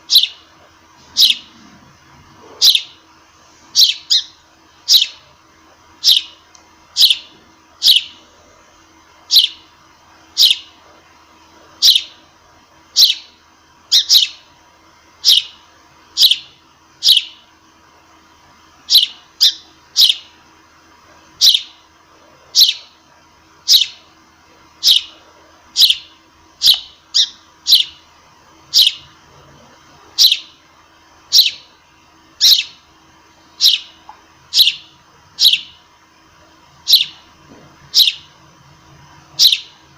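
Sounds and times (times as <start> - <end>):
sparrow chirping: 0.1 - 0.4, 1.1 - 1.5, 2.6 - 3.0, 3.7 - 5.2, 6.0 - 6.4, 7.0 - 8.2, 9.3 - 9.6, 10.4 - 10.8, 11.8 - 12.2, 12.9 - 14.5, 15.2 - 15.6, 16.2 - 17.4, 18.9 - 20.3, 21.4 - 21.8, 22.5 - 23.0, 23.6 - 24.1, 24.8 - 28.0, 28.7 - 29.1, 30.2 - 30.6, 31.3 - 31.7, 32.4 - 32.8, 33.6 - 35.8, 36.8 - 37.3, 37.9 - 38.3, 39.4 - 39.8.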